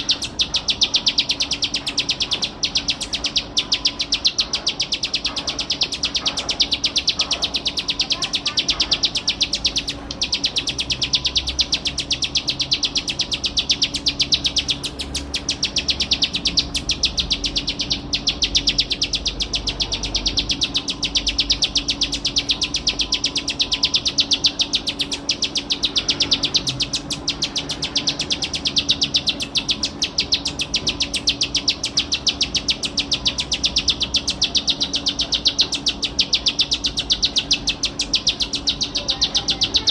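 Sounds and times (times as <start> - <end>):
bird singing rapid trill: 0.0 - 39.9.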